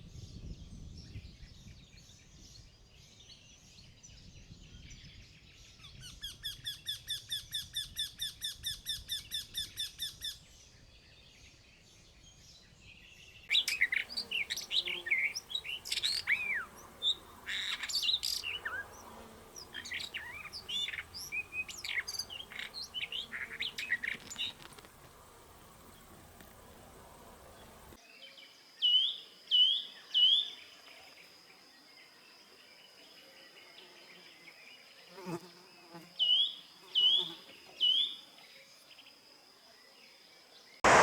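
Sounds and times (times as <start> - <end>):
birds chirping and whistling: 13.5 - 24.8
rapid bird trill: 13.5 - 24.9.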